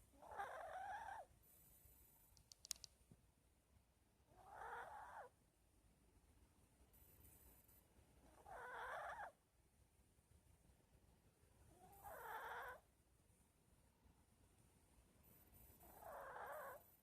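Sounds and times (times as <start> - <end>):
pet snoring quietly: 11.7 - 12.8, 15.6 - 17.0.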